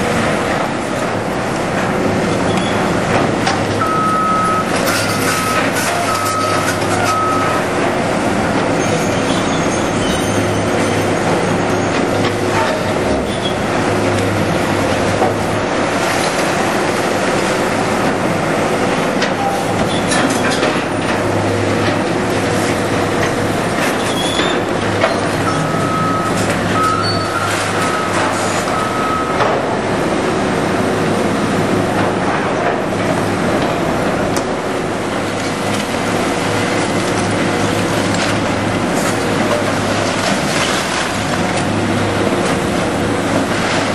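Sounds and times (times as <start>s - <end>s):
diesel machinery running: 0.0s - 43.9s
backup alarm beeping: 3.8s - 4.7s, 5.4s - 7.6s, 25.4s - 29.4s.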